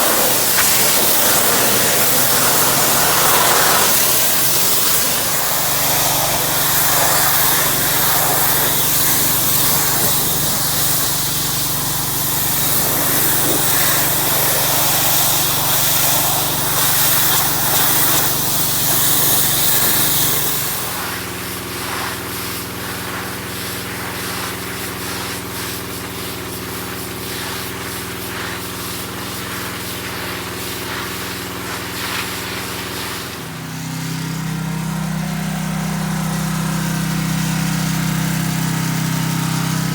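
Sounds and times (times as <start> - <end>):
petrol engine running: 0.0 - 20.8, 33.4 - 39.9
high-pressure water spray hissing: 0.0 - 39.9.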